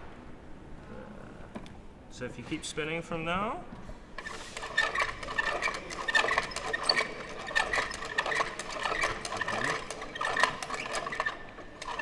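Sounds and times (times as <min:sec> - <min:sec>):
gears clattering clicks: 0:04.2 - 0:12.0.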